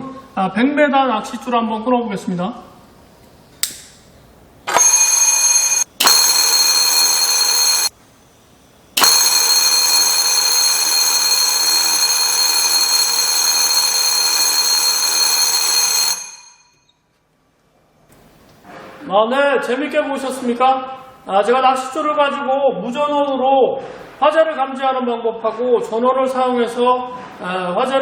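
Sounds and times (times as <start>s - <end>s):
electric fire alarm bell ringing: 4.7s - 7.9s, 9.0s - 16.9s.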